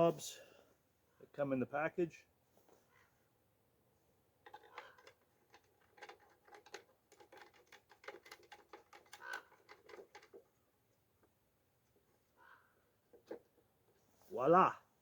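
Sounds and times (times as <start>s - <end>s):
plastic parts clicking and rattling: 4.4s - 10.6s.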